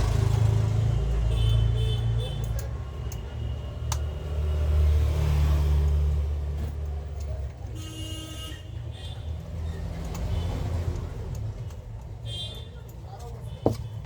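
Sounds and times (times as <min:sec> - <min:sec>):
traffic engine rumble: 0:00.0 - 0:14.0.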